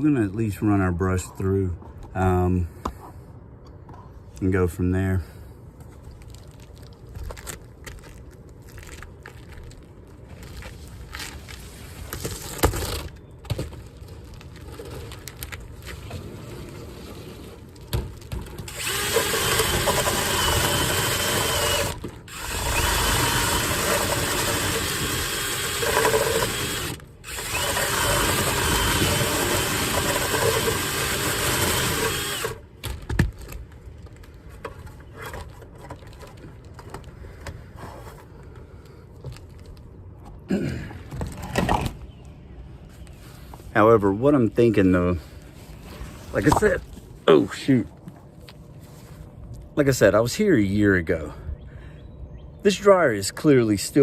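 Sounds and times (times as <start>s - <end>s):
cordless drill spinning brush: 18.7s - 32.6s.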